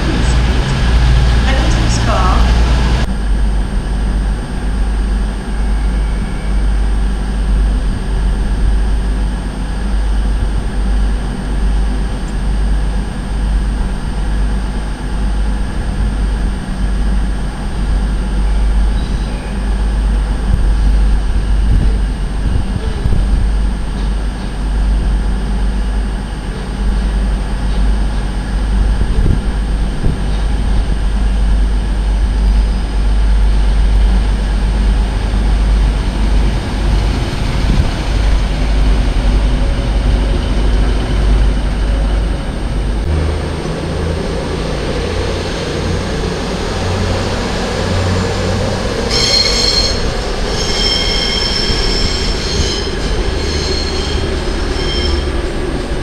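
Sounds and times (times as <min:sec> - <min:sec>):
diesel train engine rumble: 0:00.0 - 0:56.0
high-pitched metallic squeal: 0:49.0 - 0:56.0.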